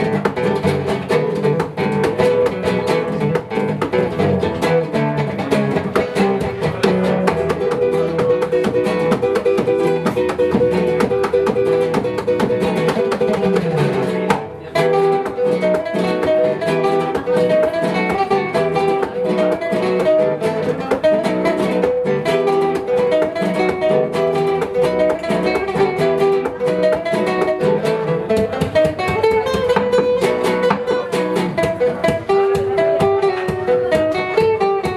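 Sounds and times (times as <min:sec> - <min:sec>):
acoustic guitar plucked and strummed: 0:00.0 - 0:34.9.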